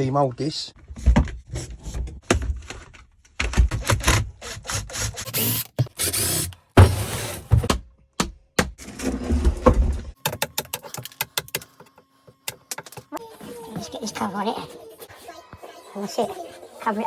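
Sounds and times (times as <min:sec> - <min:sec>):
knocks and thumps: 0:00.8 - 0:04.2, 0:06.8 - 0:08.8.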